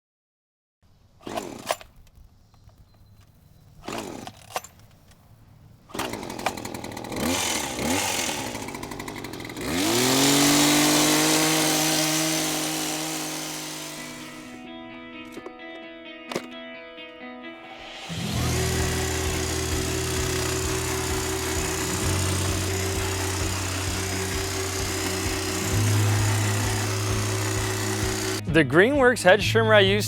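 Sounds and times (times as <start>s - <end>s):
power tool electric motor whining: 1.2s - 1.9s, 3.8s - 4.7s, 5.9s - 14.6s, 17.7s - 28.4s.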